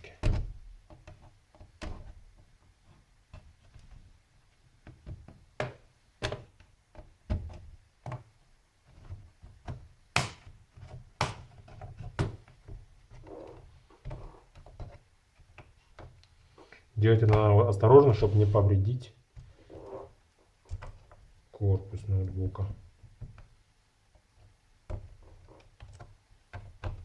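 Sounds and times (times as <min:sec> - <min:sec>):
knocks: 0:10.2 - 0:10.5, 0:11.2 - 0:11.6.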